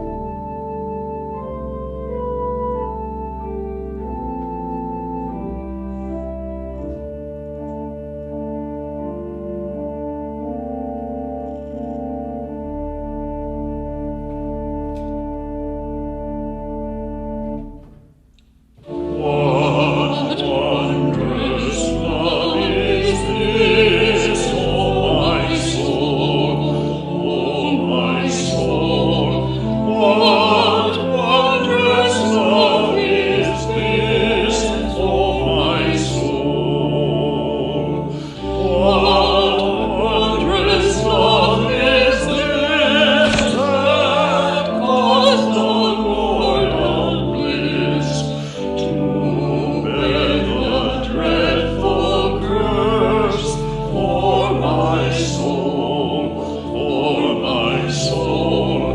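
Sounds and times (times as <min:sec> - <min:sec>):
voices singing with vibrato: 0:18.9 - 0:58.9.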